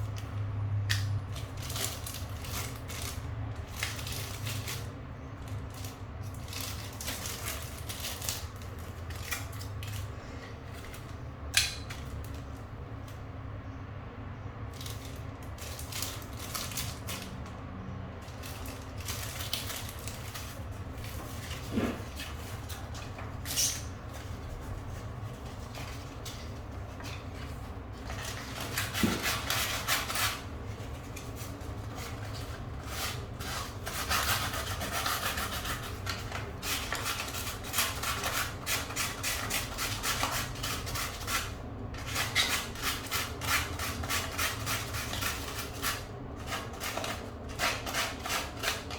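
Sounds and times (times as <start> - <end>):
rubbing and scraping on rubber tire: 18.2 - 48.9.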